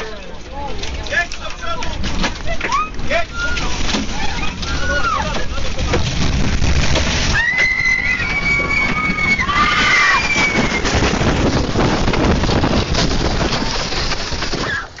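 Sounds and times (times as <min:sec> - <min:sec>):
loud rushing rattling din: 0:00.8 - 0:15.0
people screaming: 0:02.6 - 0:05.4, 0:07.3 - 0:11.0.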